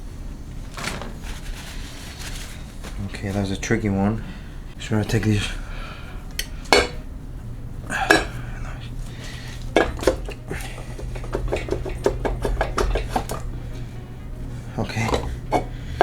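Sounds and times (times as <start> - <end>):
steady low hum: 0.0 - 16.0
metal tools clinking: 6.4 - 7.1, 7.8 - 13.9, 14.7 - 16.0.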